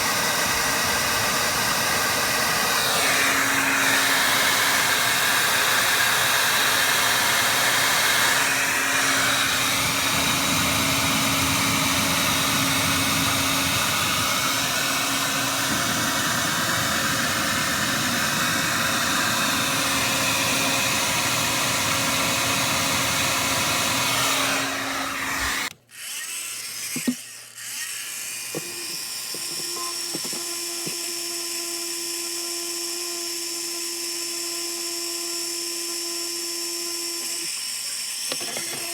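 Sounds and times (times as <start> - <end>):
loud motor with rushing air: 0.0 - 25.7.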